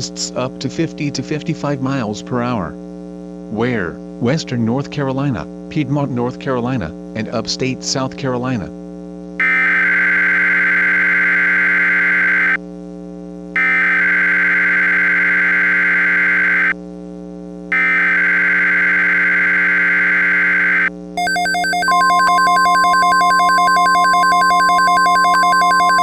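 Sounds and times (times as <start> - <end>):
single-pitch alarm tone: 9.4 - 12.6, 13.6 - 16.8, 17.7 - 26.0
rasping data bursts: 13.6 - 16.8, 17.8 - 26.0.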